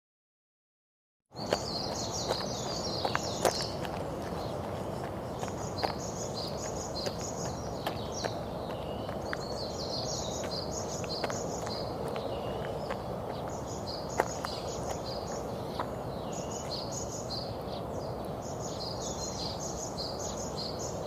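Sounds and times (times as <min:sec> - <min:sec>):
birds chirping: 0:01.3 - 0:21.0.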